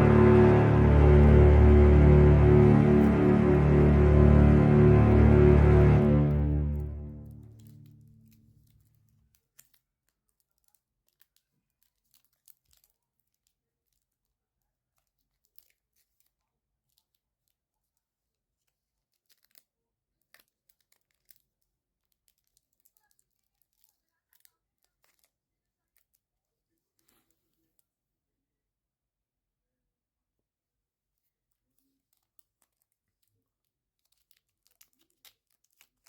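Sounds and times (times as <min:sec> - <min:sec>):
packaging rustling and tearing: 0:31.8 - 0:36.0.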